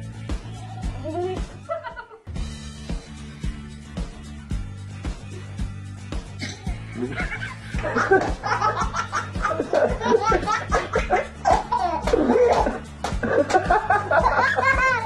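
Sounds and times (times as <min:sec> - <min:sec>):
background music with steady beat: 0:00.0 - 0:15.0
baby giggling: 0:06.4 - 0:12.8, 0:13.4 - 0:15.0.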